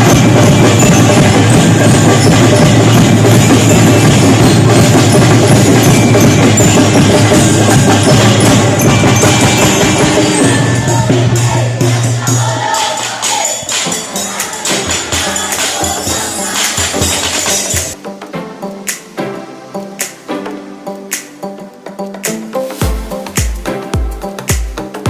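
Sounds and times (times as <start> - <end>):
music with heavy bass: 0.0 - 18.0, 22.2 - 25.0.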